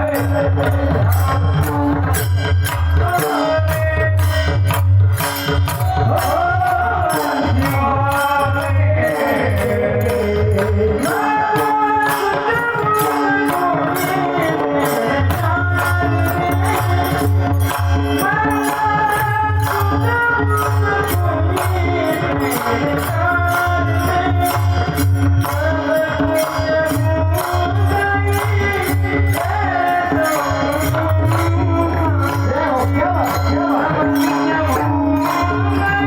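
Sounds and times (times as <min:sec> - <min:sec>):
jingling percussion beat: 0:00.0 - 0:36.0.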